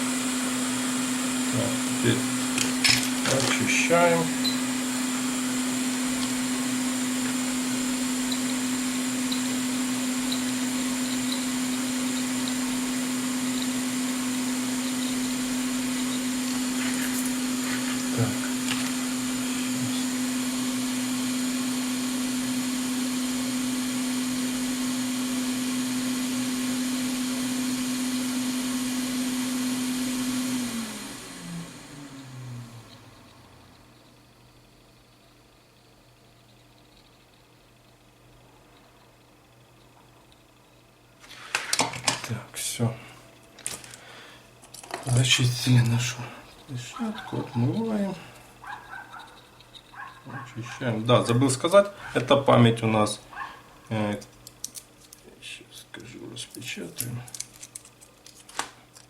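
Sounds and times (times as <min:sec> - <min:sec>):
hot air blower humming: 0:00.0 - 0:34.0, 0:41.2 - 0:54.2
fan winding down: 0:00.0 - 0:35.3, 0:41.2 - 0:55.2.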